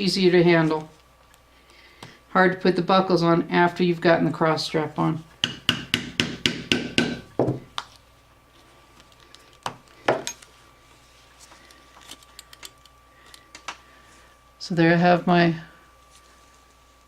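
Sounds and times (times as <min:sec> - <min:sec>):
mallet tapping punch through leather: 0:05.4 - 0:07.6.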